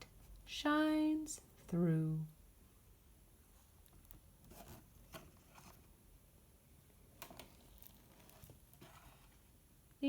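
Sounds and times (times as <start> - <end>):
faint clicks and rustles: 3.4 - 6.0, 6.8 - 9.6.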